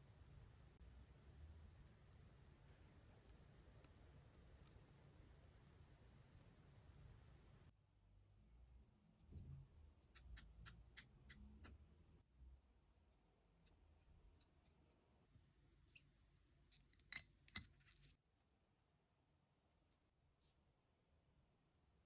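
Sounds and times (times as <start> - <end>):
metallic clicks of watch tools: 0.0 - 7.7, 9.2 - 11.9, 16.8 - 18.0.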